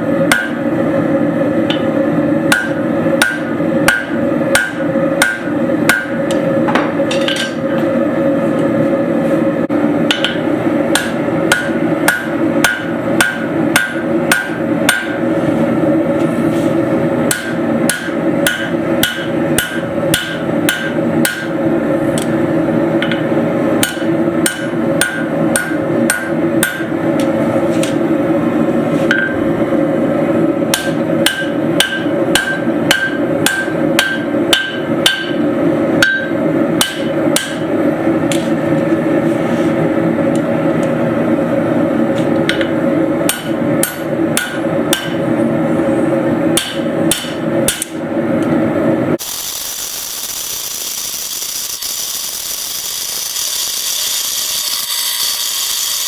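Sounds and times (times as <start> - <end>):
hammer ringing on anvil: 0.3 - 0.6, 2.5 - 6.4, 10.1 - 15.2, 17.3 - 21.6, 23.8 - 27.0, 29.1 - 29.4, 30.7 - 35.4, 36.0 - 37.7, 43.3 - 45.2.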